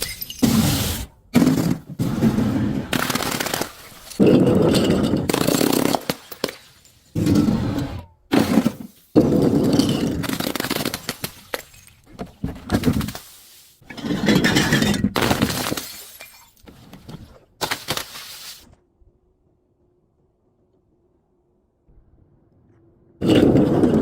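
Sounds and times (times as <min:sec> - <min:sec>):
glass bottles shattering: 0:00.0 - 0:00.6, 0:03.0 - 0:07.0, 0:14.2 - 0:16.6
broken glass crunching and tinkling: 0:14.4 - 0:16.6.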